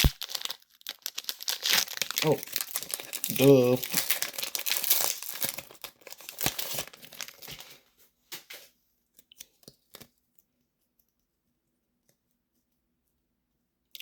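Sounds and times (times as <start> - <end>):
foil wrapper crinkling and tearing: 0.0 - 7.9.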